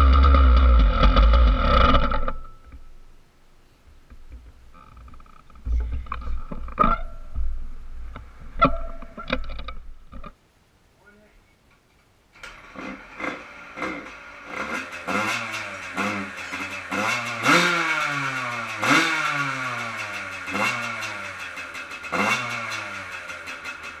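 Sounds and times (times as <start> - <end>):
dirt bike engine revving: 0.0 - 2.3, 12.5 - 24.0.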